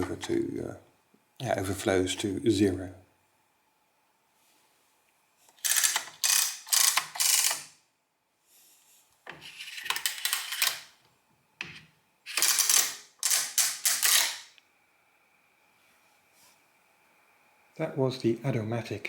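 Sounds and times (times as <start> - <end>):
adding machine ratcheting clicks: 5.6 - 7.7, 9.8 - 10.9, 12.3 - 14.6.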